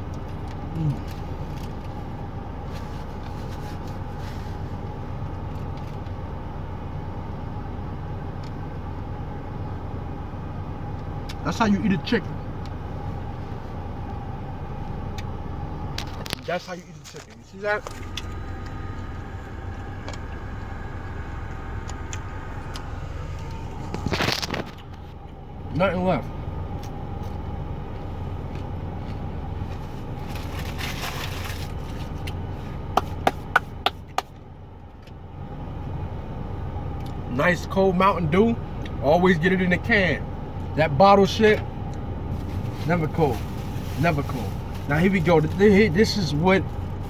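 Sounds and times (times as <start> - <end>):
steady low hum: 0.0 - 47.0
chewing and crunching: 26.8 - 32.4.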